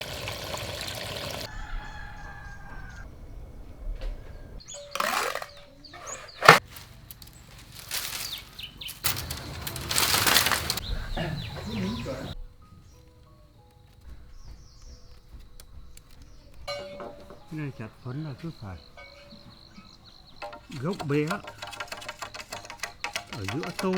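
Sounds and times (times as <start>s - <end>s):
rooster crowing: 1.4s - 3.3s
chickens flapping wings and scuffling: 6.6s - 12.4s.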